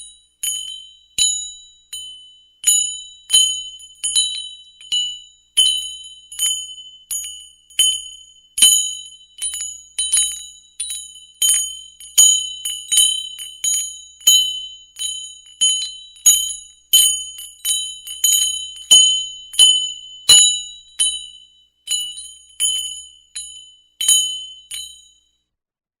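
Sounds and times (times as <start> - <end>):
cattle bell ringing: 15.6 - 25.2.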